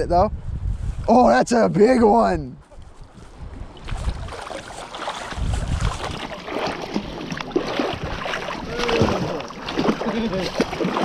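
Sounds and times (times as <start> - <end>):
river water splashing on rocks: 3.8 - 11.0.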